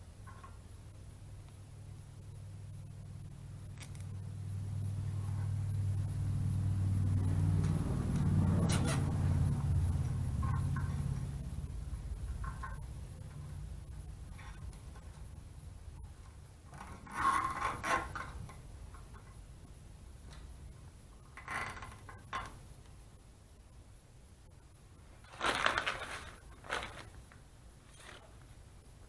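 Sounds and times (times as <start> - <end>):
faint low rumble: 0.0 - 29.0
scraping and rubbing: 16.7 - 18.6, 25.2 - 28.6.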